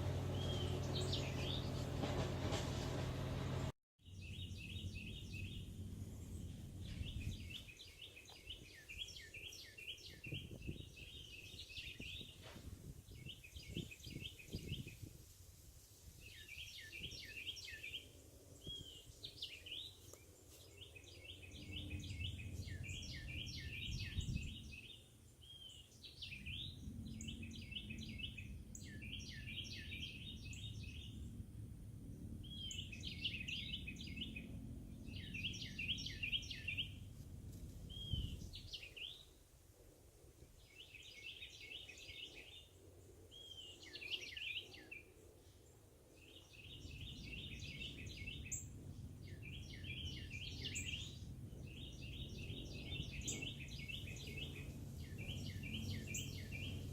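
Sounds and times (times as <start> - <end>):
songbird singing: 0.0 - 15.3, 16.1 - 56.9
low rumble: 30.0 - 38.7.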